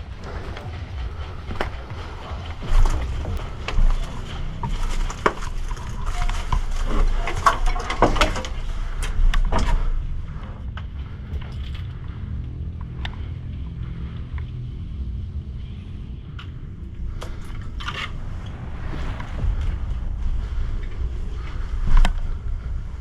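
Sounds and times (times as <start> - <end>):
low rumble on microphone: 12.0 - 23.0
footsteps: 18.0 - 20.4.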